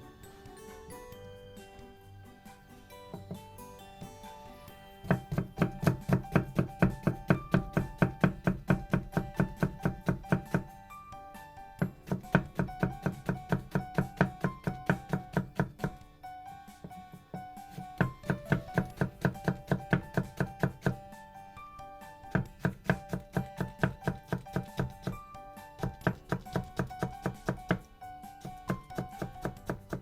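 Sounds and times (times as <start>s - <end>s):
background music: 0.0s - 30.0s
knife chopping on cutting board: 5.0s - 10.6s, 11.8s - 16.0s, 16.8s - 21.0s, 22.3s - 25.2s, 25.8s - 30.0s.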